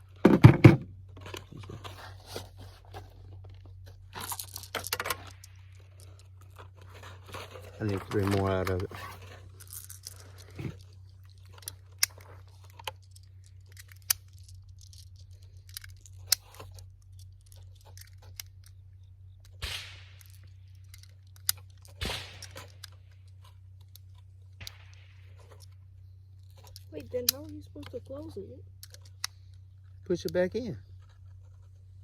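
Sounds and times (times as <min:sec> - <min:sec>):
cartridges clicking into magazine: 0:09.6 - 0:25.8.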